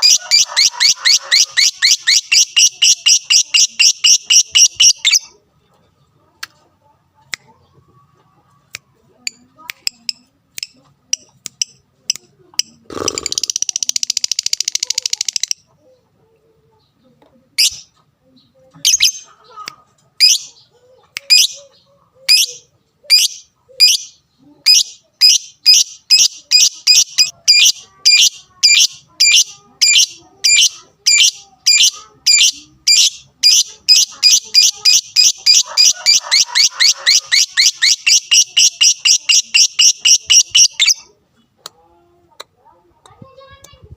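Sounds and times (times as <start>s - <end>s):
lovebird high chirps: 0.0s - 5.3s, 17.6s - 17.9s, 20.2s - 20.6s, 22.3s - 41.1s.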